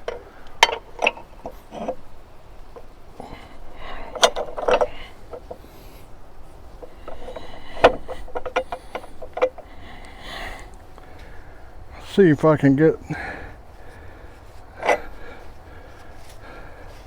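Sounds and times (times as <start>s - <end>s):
metal clicks and knocks: 0.0s - 3.0s, 3.6s - 5.6s, 6.8s - 9.7s, 14.8s - 15.2s.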